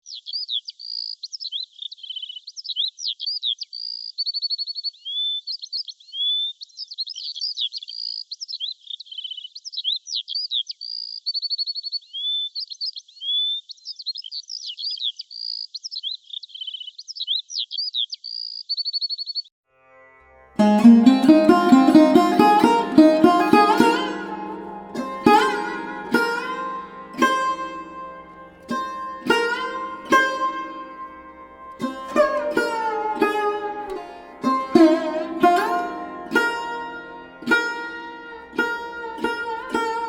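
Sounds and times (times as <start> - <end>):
small songbirds singing: 0.0 - 19.5.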